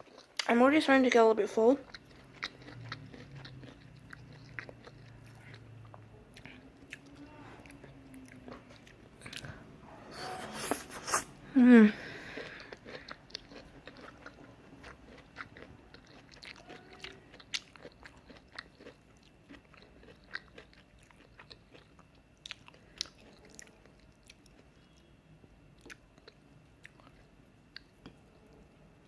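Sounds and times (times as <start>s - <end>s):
chewing mouth sounds: 1.8s - 9.6s, 12.4s - 25.1s.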